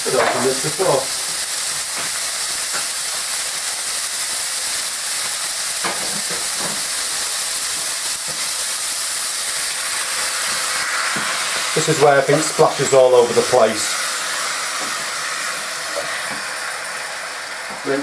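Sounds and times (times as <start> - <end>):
meat and peppers sizzling in pan: 0.0 - 18.0.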